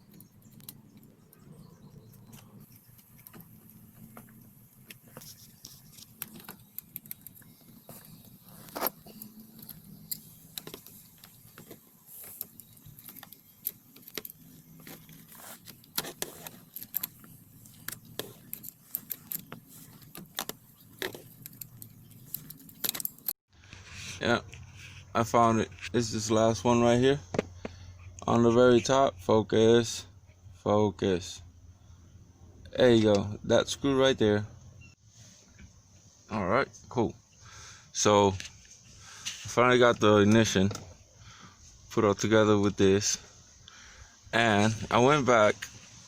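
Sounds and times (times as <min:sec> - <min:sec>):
small tools clicking and rattling: 0:00.0 - 0:23.4.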